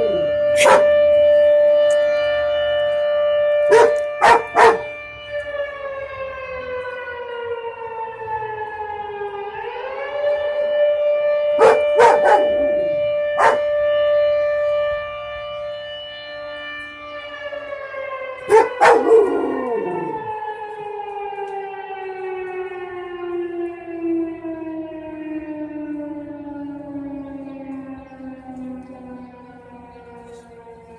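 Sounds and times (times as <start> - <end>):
mechanical air raid siren: 0.0 - 30.9
dog barking: 0.6 - 0.9, 3.7 - 4.9, 11.6 - 12.6, 13.4 - 13.7, 18.5 - 19.4.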